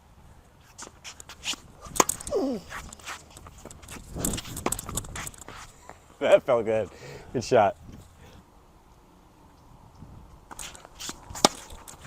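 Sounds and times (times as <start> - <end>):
racket hitting tennis ball: 0.6 - 5.7, 10.5 - 12.0
shoes scuffing on court: 0.6 - 6.1, 10.5 - 12.0.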